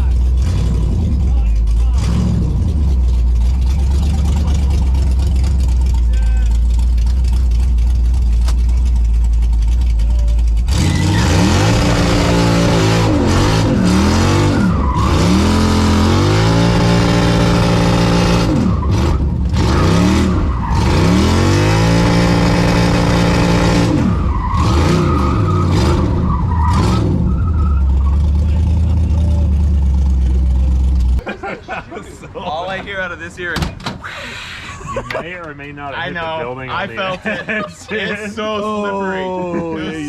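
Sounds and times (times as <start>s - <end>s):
car engine revving: 0.0s - 31.2s
tyres squealing: 10.7s - 12.7s.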